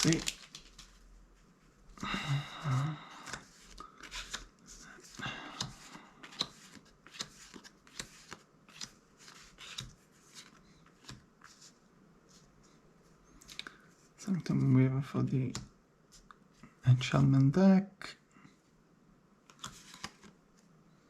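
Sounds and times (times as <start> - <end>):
cards rustling: 0.0 - 1.0, 2.0 - 11.7, 19.5 - 20.4
cards clicking and sliding: 3.2 - 11.2, 19.5 - 20.4.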